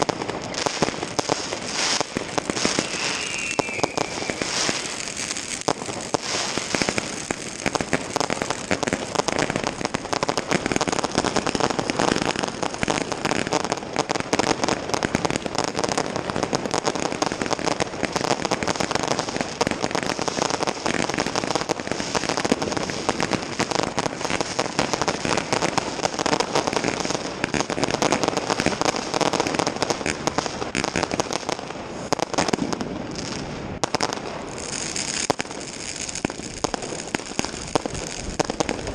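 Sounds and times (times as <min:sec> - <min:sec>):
fireworks and firecrackers banging: 0:00.0 - 0:38.9.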